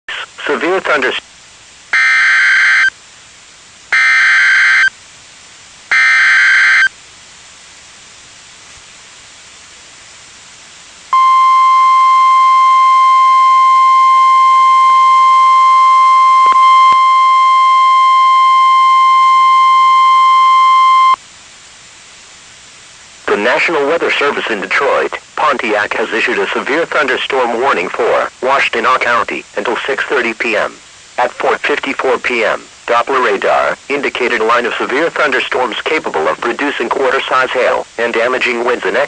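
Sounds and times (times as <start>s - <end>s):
harsh digital data bursts: 2.0s - 2.9s, 4.0s - 4.9s, 5.9s - 6.9s
steady warning alarm tone: 2.0s - 2.9s, 3.9s - 4.9s, 5.9s - 6.9s, 11.1s - 21.2s.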